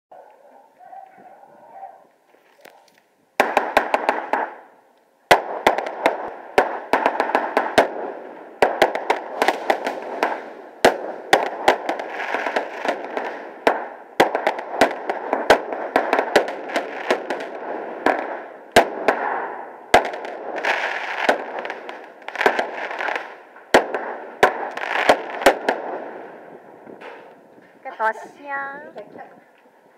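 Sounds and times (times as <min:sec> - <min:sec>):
firework crackle: 0:02.4 - 0:04.7, 0:05.3 - 0:28.4
firework pops: 0:02.6 - 0:04.6, 0:05.3 - 0:26.1, 0:26.8 - 0:27.7.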